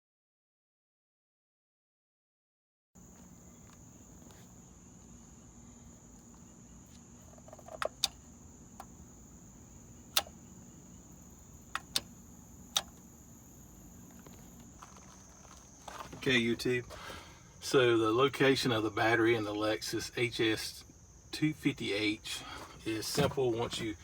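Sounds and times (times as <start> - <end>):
sharp clicks: 7.6 - 9.0, 9.9 - 10.6, 11.6 - 13.1.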